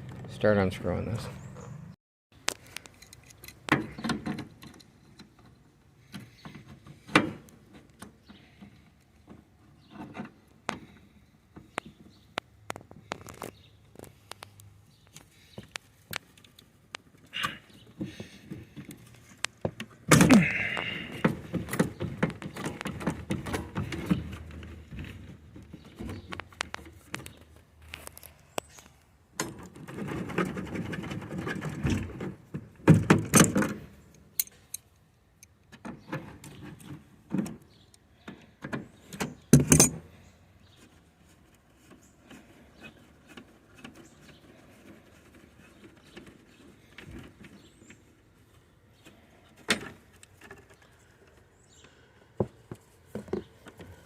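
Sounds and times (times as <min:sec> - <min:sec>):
hand tools and metal fittings rattling: 0:02.5 - 0:12.1, 0:33.2 - 0:40.2.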